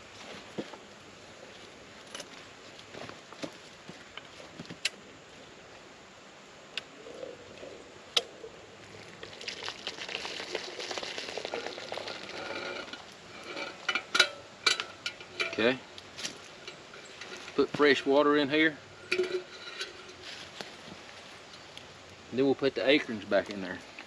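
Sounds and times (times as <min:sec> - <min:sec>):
water pouring and splashing: 0:08.9 - 0:14.1.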